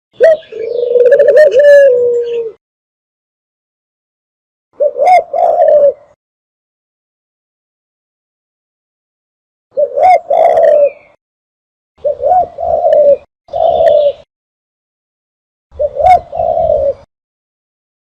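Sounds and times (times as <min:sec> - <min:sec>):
dove cooing: 0:00.2 - 0:02.6, 0:04.8 - 0:06.2, 0:09.8 - 0:11.2, 0:12.0 - 0:14.3, 0:15.8 - 0:17.1.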